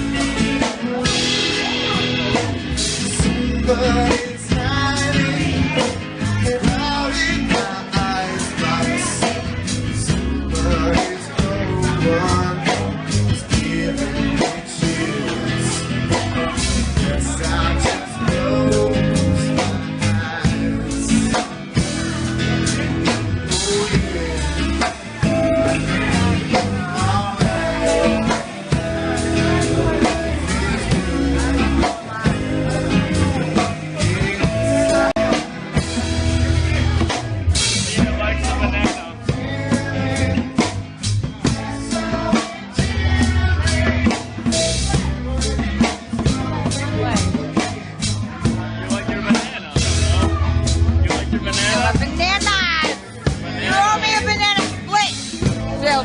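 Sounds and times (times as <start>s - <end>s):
band playing live: 0.0s - 56.0s
bass drum beat: 0.0s - 56.0s.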